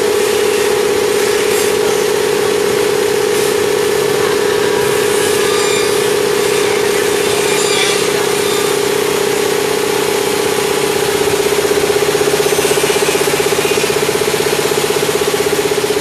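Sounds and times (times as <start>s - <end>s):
machine humming: 0.0s - 16.0s.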